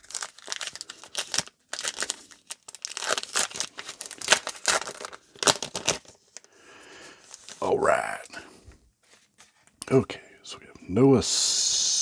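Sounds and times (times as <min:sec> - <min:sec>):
wrapper tearing and crumpling: 0:00.0 - 0:06.5.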